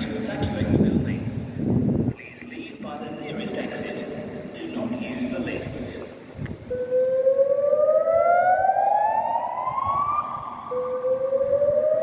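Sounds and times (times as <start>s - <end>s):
fire alarm whoop tone: 6.7s - 12.0s.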